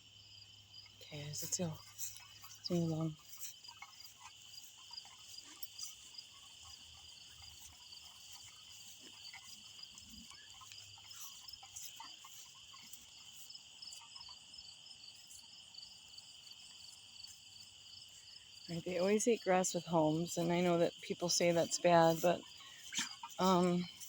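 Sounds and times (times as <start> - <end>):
insects trilling: 0.0 - 24.0.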